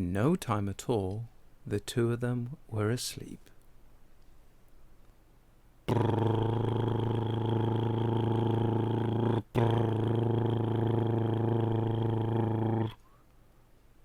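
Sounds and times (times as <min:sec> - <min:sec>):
droning snores: 0:05.9 - 0:13.0.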